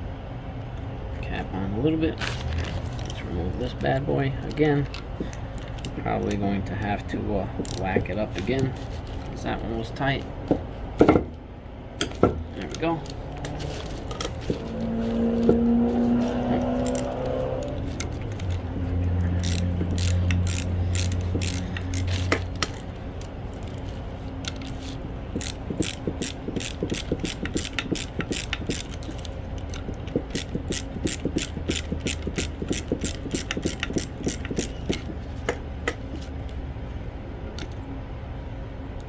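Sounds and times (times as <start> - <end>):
ratchet wrench clicking: 7.6 - 7.9, 16.2 - 36.3.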